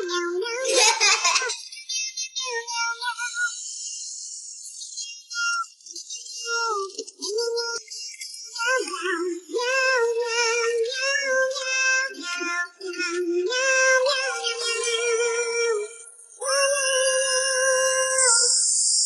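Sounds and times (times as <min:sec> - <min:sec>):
synthetic childlike singing voice: 0:00.0 - 0:19.0.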